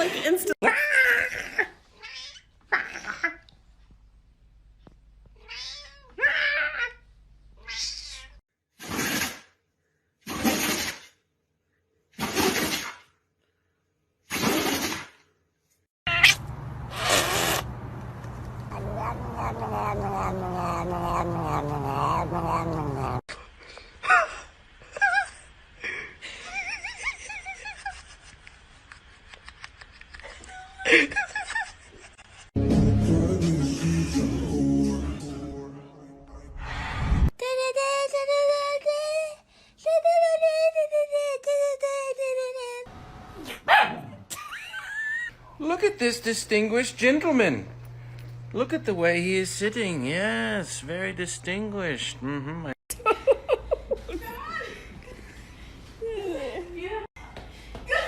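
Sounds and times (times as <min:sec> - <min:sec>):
cat meowing: 0:05.4 - 0:06.9, 0:16.1 - 0:16.4, 0:18.7 - 0:23.2.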